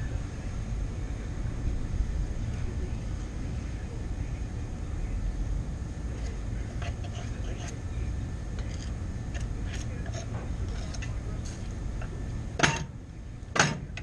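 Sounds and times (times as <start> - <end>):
sharp metal knocks: 13.5 - 14.0.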